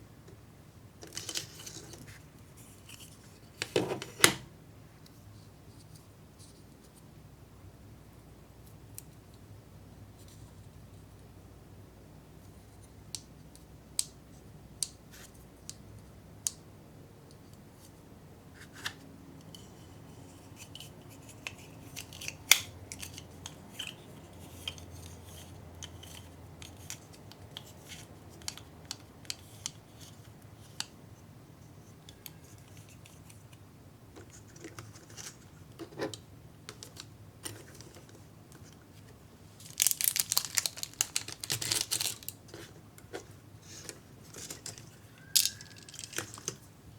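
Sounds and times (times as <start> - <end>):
plastic pieces clicking: 39.6 - 42.4, 44.4 - 46.6
rapid plastic clattering: 39.7 - 42.3.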